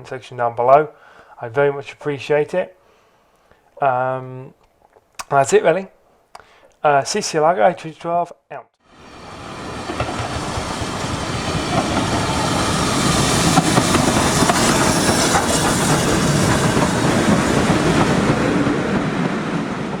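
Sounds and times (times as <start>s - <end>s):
train rushing noise: 8.9s - 20.0s
wheels clattering on rails: 9.2s - 20.0s.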